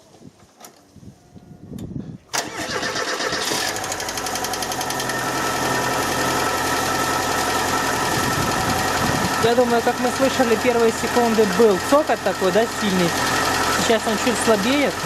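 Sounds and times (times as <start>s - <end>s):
starter motor cranking: 2.3s - 15.0s
car engine idling: 3.8s - 15.0s
rapid lifter ticking: 8.6s - 15.0s.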